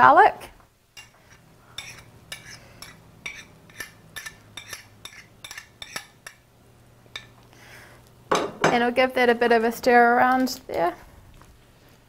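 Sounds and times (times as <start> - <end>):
utensil clinking against bowl and pan: 1.8 - 6.4, 7.1 - 7.4.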